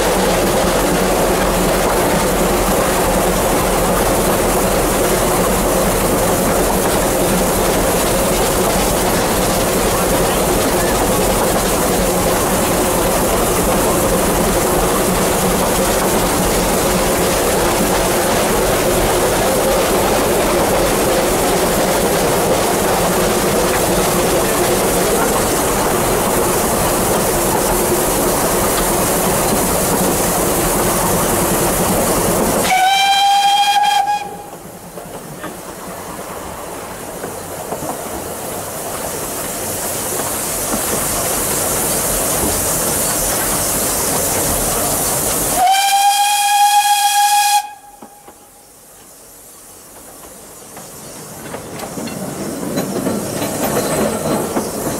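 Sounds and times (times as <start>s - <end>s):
steam locomotive hissing: 0.0s - 54.9s
steam whistle: 32.6s - 34.6s, 45.5s - 48.6s.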